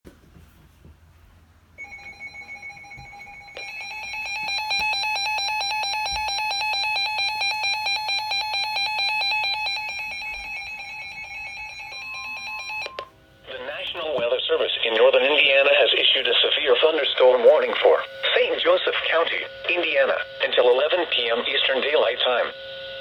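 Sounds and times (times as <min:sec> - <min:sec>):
shrill pulsing alarm beep: 0:01.8 - 0:13.2, 0:16.7 - 0:23.0.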